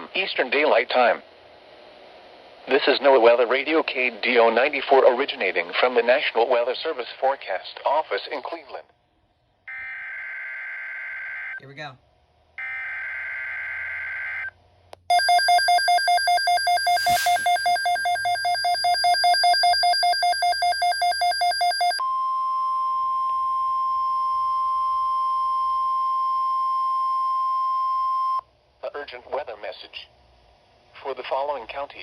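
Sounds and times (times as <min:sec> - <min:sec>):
alarm beeping rapidly: 0:15.1 - 0:22.0
steady alert tone: 0:15.1 - 0:22.0
warbling data tones: 0:15.1 - 0:22.0.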